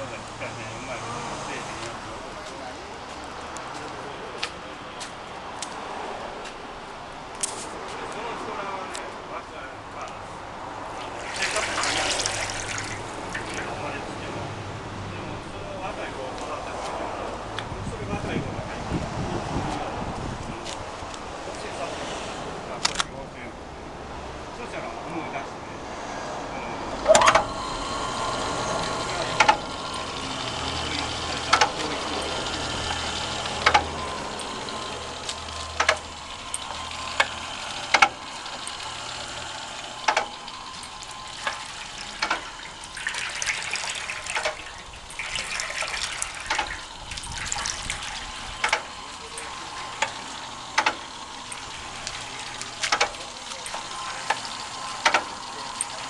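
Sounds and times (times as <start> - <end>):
pumped water hissing and splashing: 10.7 - 14.2, 27.1 - 56.0
pump knocking: 11.0 - 13.9, 27.0 - 56.0.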